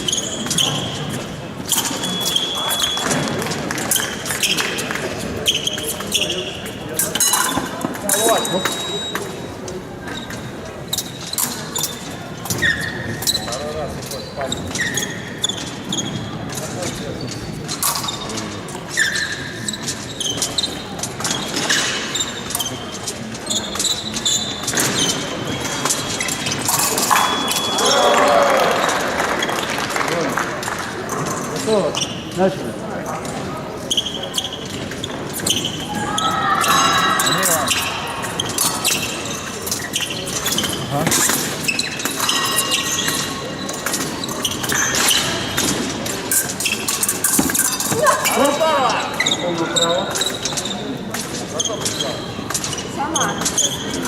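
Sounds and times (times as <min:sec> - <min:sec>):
shoes squeaking: 0:00.0 - 0:54.0
fencing blades clinking: 0:16.5 - 0:28.1, 0:36.6 - 0:54.0.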